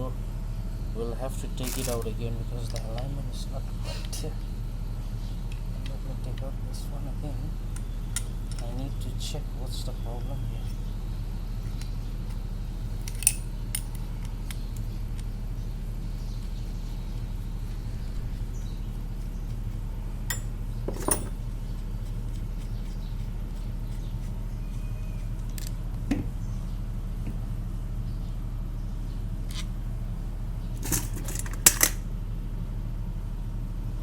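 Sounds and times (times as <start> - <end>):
steady low hum: 0.0 - 34.0
sharp metallic clicks and clinks: 13.0 - 14.6, 20.3 - 21.4, 30.8 - 32.0.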